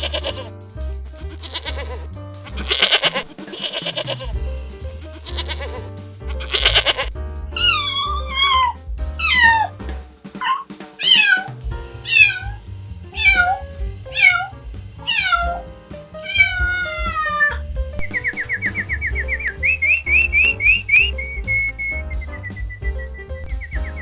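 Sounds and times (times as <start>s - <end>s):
background music: 0.0s - 24.0s
cat meowing: 1.4s - 2.0s, 5.2s - 5.8s, 6.4s - 9.8s, 10.4s - 12.6s, 13.2s - 22.8s.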